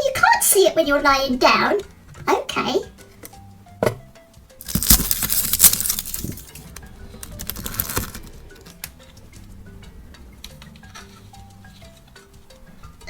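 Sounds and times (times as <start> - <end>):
soft background music: 0.0 - 13.0
plastic scraping and rustling: 4.6 - 9.5.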